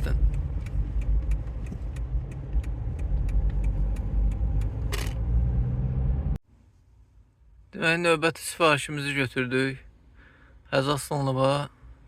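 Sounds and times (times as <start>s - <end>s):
sharp ticks: 0.0s - 4.8s
engine and road rumble: 0.0s - 12.0s.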